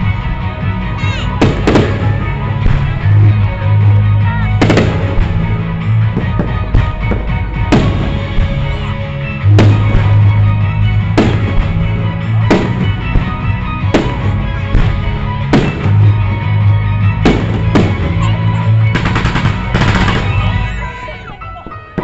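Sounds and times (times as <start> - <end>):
loud music with heavy bass: 0.0 - 21.4
fireworks bangs: 1.4 - 3.4, 4.6 - 20.9
fireworks crackling: 4.5 - 21.1.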